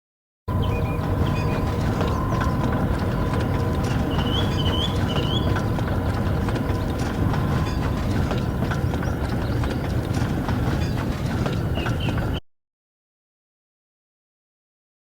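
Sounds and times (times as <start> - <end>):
train clattering over rail joints: 0.5 - 12.4
train rumbling: 0.5 - 12.4.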